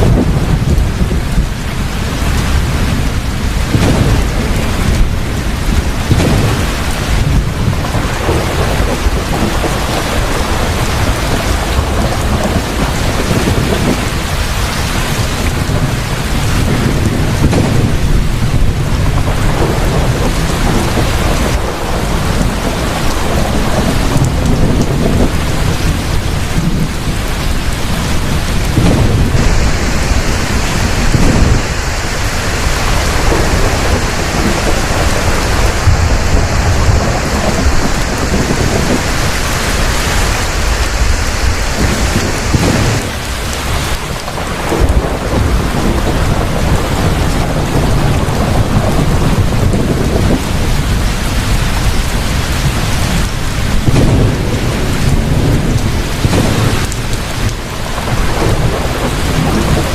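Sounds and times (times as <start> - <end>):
heavy rain falling: 0.0 - 59.9
rolling thunder: 0.0 - 59.9.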